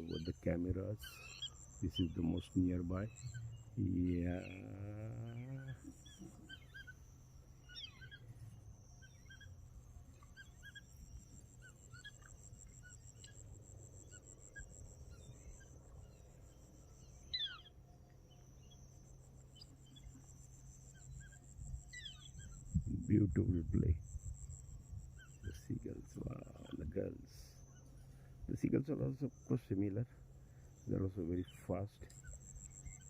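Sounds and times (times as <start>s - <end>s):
birds chirping: 0.0s - 33.0s
faint low hum: 0.0s - 33.0s.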